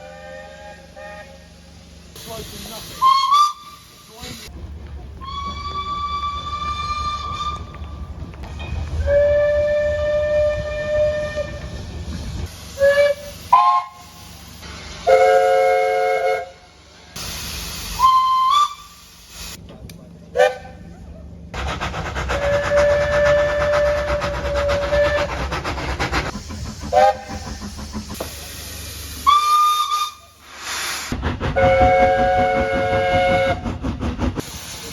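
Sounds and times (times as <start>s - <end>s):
train horn blasts: 0.0s - 1.4s, 9.0s - 11.6s
moving train rumble: 0.0s - 34.9s.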